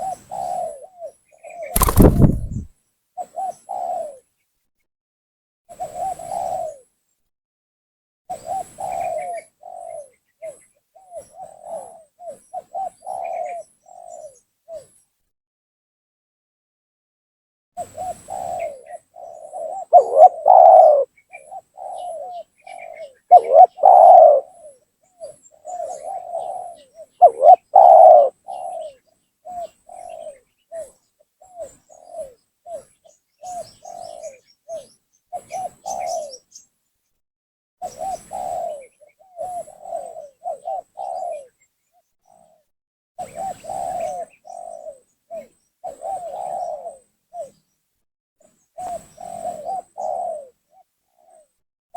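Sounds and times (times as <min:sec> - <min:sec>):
dove cooing: 0:01.8 - 0:02.7, 0:18.0 - 0:24.8, 0:25.7 - 0:29.0, 0:38.0 - 0:41.5, 0:43.2 - 0:47.5, 0:49.4 - 0:50.6.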